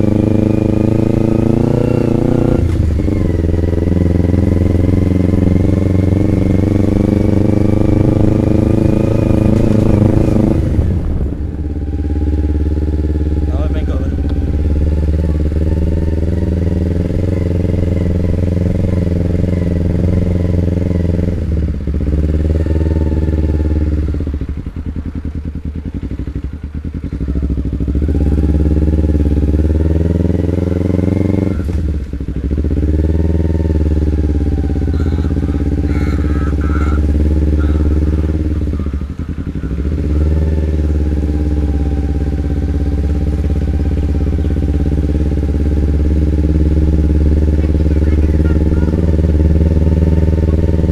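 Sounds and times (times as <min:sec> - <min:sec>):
motorcycle exhaust running: 0:00.0 - 0:50.9.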